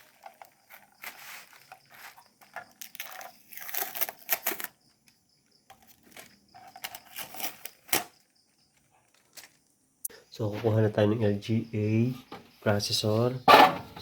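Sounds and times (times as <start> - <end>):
packaging rustling and crinkling: 0.0 - 4.8, 5.7 - 9.7.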